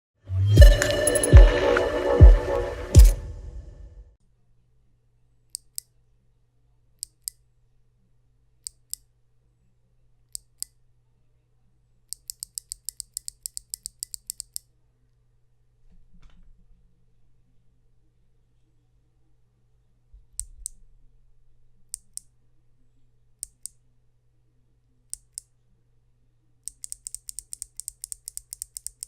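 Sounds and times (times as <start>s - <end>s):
music: 0.2s - 4.0s.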